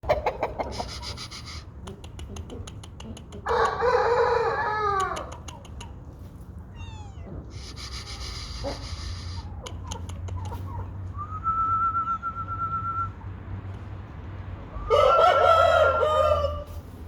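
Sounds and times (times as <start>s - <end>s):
sharp clicks: 1.8s - 3.5s, 5.0s - 6.0s
rooster crowing: 3.5s - 5.3s, 14.8s - 16.8s.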